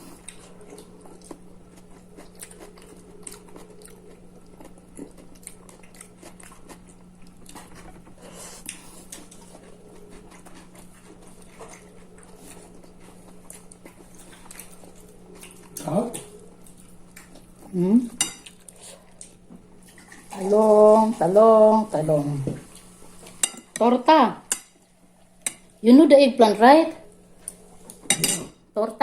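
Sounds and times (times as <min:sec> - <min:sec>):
steady low hum: 0:00.0 - 0:29.0
close-up chewing and biting: 0:00.2 - 0:17.6.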